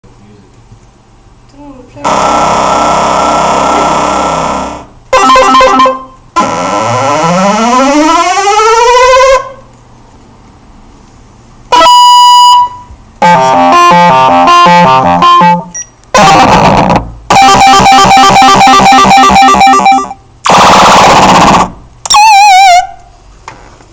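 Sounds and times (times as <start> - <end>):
synthesized eight-bit tones and beeps: 11.8 - 20.2.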